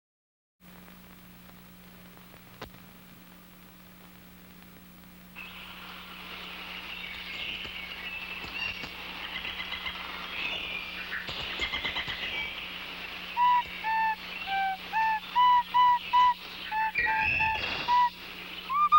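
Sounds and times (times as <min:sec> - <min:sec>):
low electrical hum: 0:00.6 - 0:18.9
short high chirps: 0:18.7 - 0:18.9.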